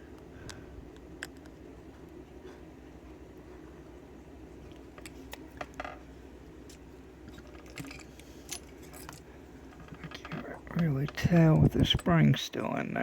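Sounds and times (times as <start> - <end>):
small metal lock parts clinking: 6.7 - 12.8.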